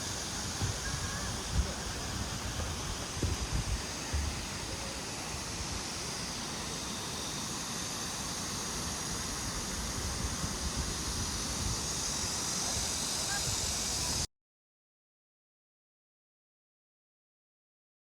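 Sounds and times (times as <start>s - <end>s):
wind thumps on microphone: 0.5s - 4.8s.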